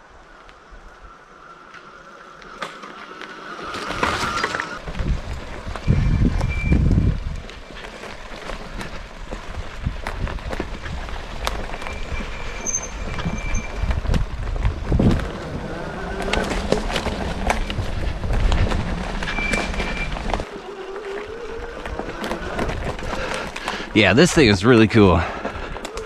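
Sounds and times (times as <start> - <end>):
bike riding rumble: 0.0 - 26.0
wind on microphone: 4.0 - 7.5, 9.5 - 20.5
short high-pitched squeals: 11.7 - 14.0, 19.0 - 22.7.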